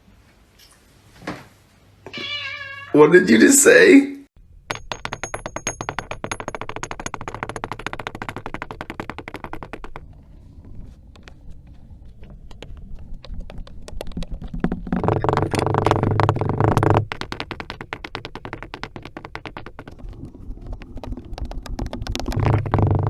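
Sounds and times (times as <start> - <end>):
dense crackle of clicks: 8.1 - 23.0.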